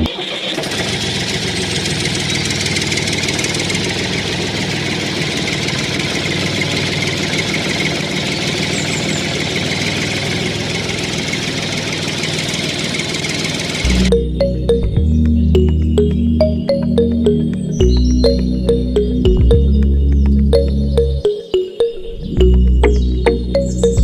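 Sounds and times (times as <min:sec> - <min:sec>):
electronic music with synth tones: 0:13.9 - 0:24.0.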